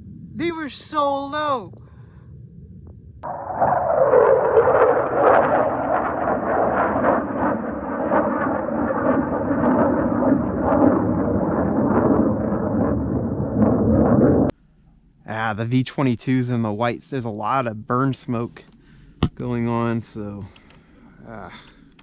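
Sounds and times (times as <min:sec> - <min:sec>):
jet engine roar: 0:00.0 - 0:14.5.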